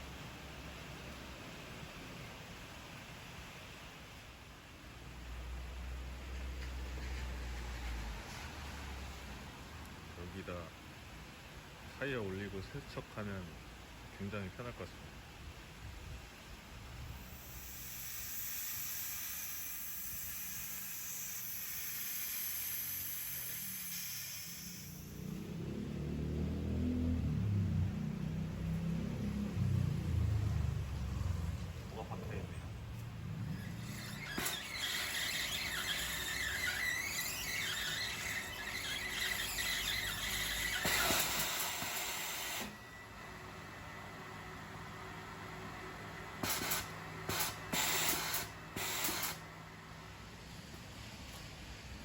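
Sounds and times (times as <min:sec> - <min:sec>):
hissing water spray on tyre: 0:17.2 - 0:25.7, 0:33.3 - 0:42.8, 0:46.4 - 0:49.4
high-pitched squeal: 0:17.3 - 0:27.0, 0:33.3 - 0:43.1.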